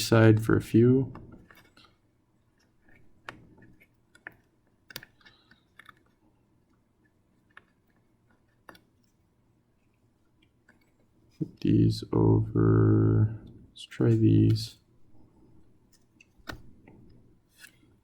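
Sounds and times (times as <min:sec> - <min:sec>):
pins clicking into plastic breadboard: 0:02.6 - 0:06.2.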